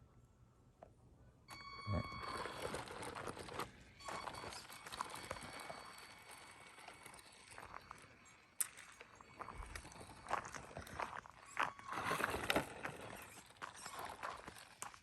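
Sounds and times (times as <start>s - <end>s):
electric motor whine: 1.5s - 15.0s
tyres crunching over rocks and gravel: 2.0s - 15.0s.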